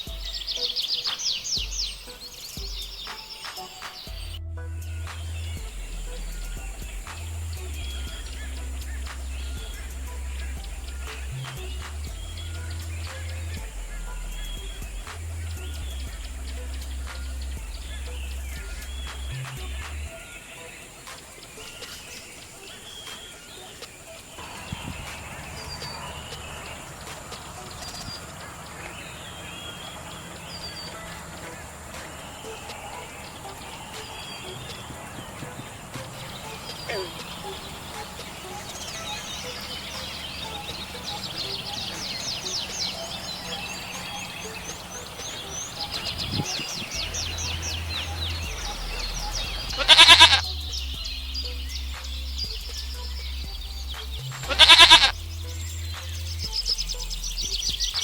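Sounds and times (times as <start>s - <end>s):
birds chirping: 0.0s - 58.0s
goat bleating: 49.6s - 50.4s, 54.4s - 55.2s.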